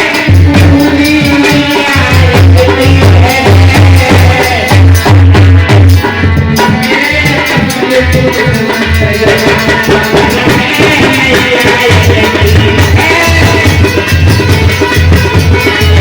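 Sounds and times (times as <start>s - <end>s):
instrumental music with fast percussion: 0.0s - 16.0s.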